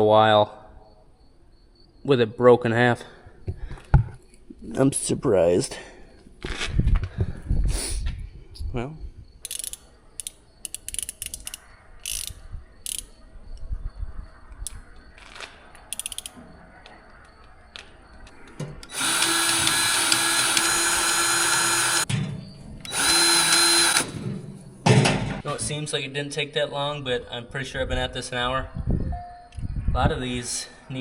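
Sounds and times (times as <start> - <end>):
power tool motor running: 18.9 - 22.1, 22.9 - 24.3.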